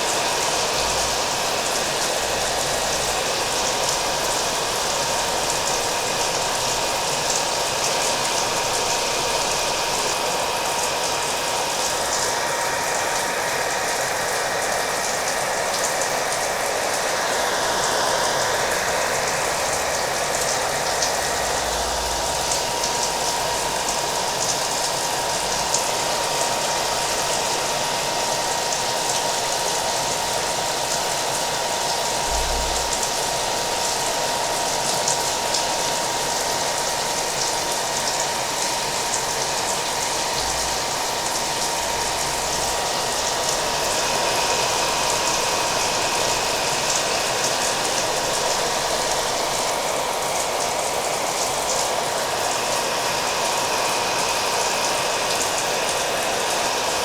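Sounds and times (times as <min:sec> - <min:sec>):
hair dryer running: 0:00.0 - 0:57.0.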